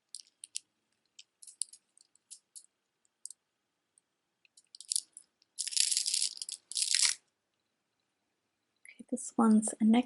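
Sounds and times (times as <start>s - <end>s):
beads and stones clicking: 0.0s - 3.4s, 4.4s - 7.2s
jewelry rustling and clattering: 0.0s - 3.4s, 4.5s - 7.2s.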